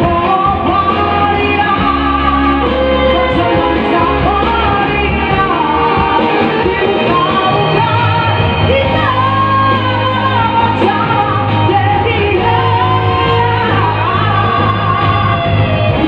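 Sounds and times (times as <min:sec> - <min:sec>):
keyboard accompaniment: 0:00.0 - 0:16.0
steady bass: 0:00.0 - 0:16.0.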